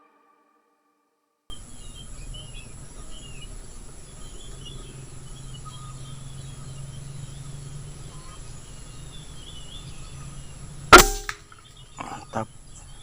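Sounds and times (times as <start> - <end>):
birds chirping: 1.5 - 13.0
faint insects: 1.5 - 13.0
steady low hum: 1.5 - 13.0
loud gunshot: 10.9 - 11.4.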